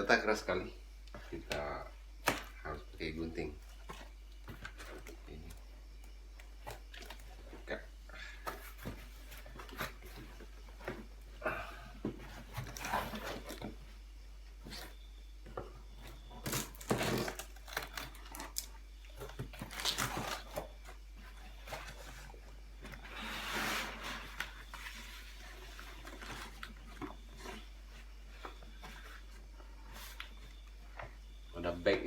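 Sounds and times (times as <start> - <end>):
packaging being cut: 16.4 - 18.7, 19.6 - 20.6.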